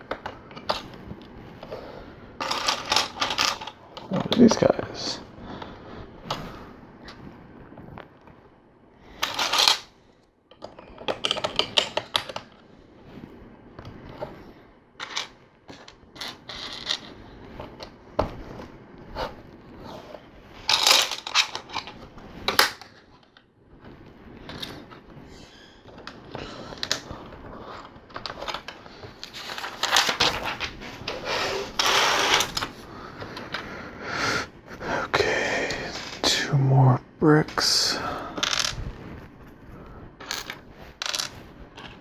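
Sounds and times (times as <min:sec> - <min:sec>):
plastic bricks clicking and rattling: 0:02.4 - 0:04.6, 0:09.2 - 0:09.9, 0:10.5 - 0:12.6, 0:15.0 - 0:17.9, 0:20.6 - 0:23.4, 0:25.9 - 0:33.6, 0:38.2 - 0:38.8.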